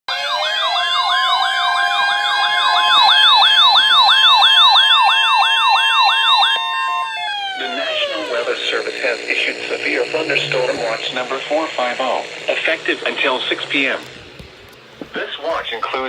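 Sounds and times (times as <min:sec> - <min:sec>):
warbling electronic siren: 0:00.1 - 0:14.7
person reading out weather watch: 0:07.6 - 0:16.0.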